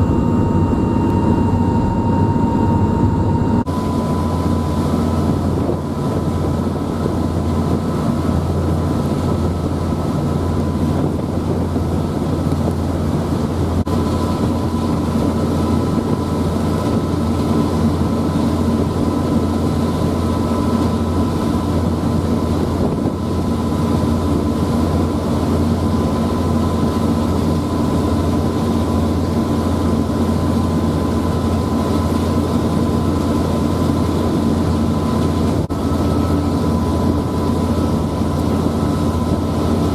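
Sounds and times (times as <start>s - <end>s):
ferry engines droning: 0.0s - 10.8s.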